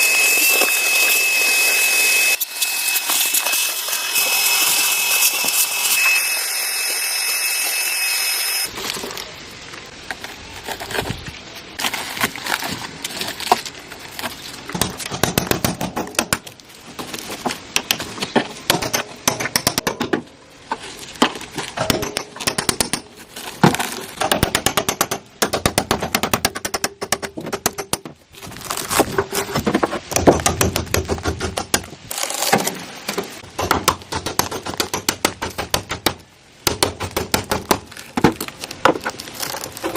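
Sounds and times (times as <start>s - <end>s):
power tool whining: 0.0s - 8.7s.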